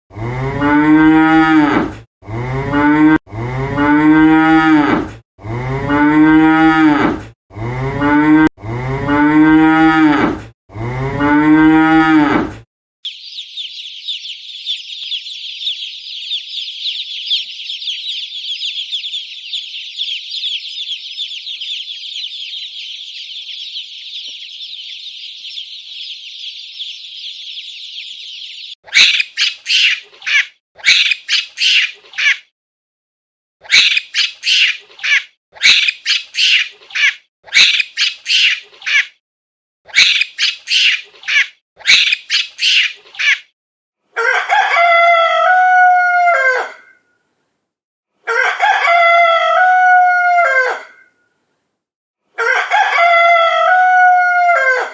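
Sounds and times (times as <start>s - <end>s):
cow mooing: 0.1s - 12.5s
high-pitched chirping chorus: 13.0s - 32.4s, 33.6s - 39.0s, 39.9s - 43.4s.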